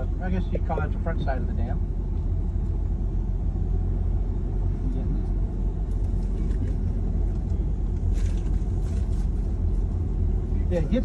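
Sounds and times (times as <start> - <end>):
car driving rumble inside cabin: 0.0 - 11.0.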